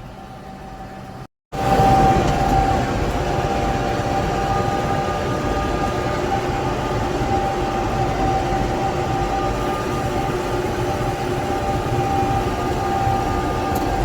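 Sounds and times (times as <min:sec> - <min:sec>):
high mechanical whine: 0:00.0 - 0:14.0
tractor and baler running: 0:00.0 - 0:14.0.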